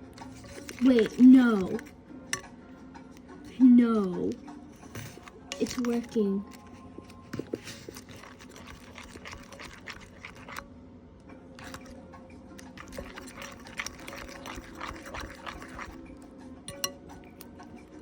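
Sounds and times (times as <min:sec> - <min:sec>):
slime squelching: 0:00.3 - 0:01.9, 0:05.6 - 0:10.6, 0:11.6 - 0:12.0, 0:12.6 - 0:16.1.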